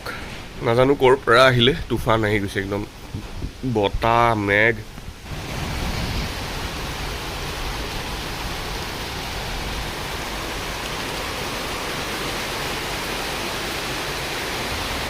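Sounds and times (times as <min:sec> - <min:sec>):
storm wind buffeting microphone: 0:01.7 - 0:04.2, 0:04.8 - 0:12.7.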